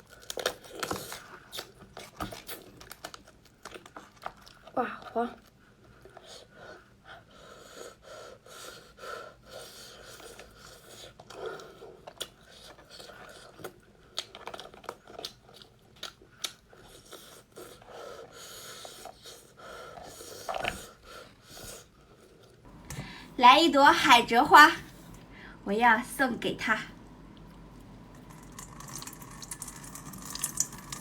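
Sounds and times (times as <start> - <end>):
person chewing with wet smacks: 0.0 - 4.8, 10.0 - 19.1
person breathing: 22.7 - 23.4, 25.0 - 25.6.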